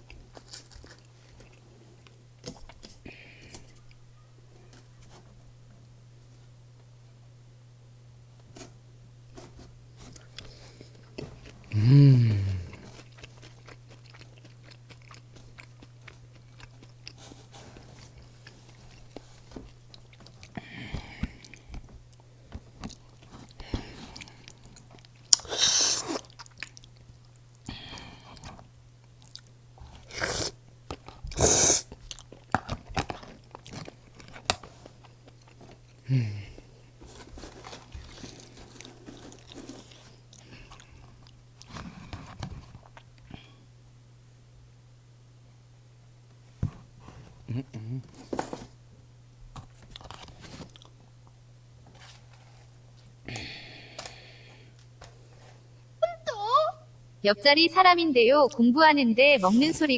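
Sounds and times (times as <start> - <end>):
faint low hum: 0.0 - 59.9
chewing food: 10.0 - 43.4, 49.6 - 51.4.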